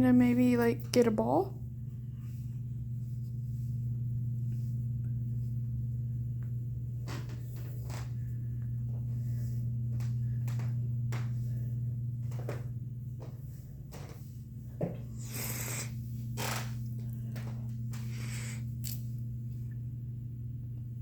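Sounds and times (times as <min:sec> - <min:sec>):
steady low hum: 0:00.0 - 0:21.0
soft clicks and rustles: 0:03.1 - 0:15.1.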